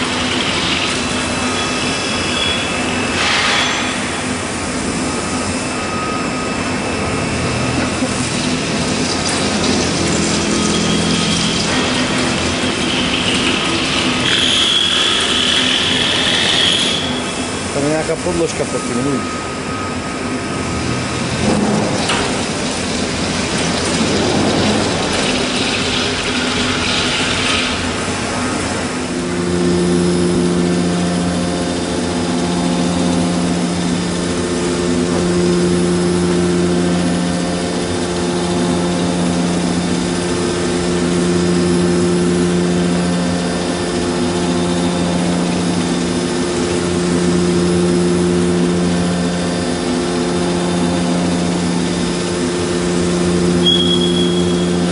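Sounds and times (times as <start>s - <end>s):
machine humming: 0.0s - 54.9s
machine cutting metal hiss: 0.1s - 4.3s, 10.6s - 17.4s.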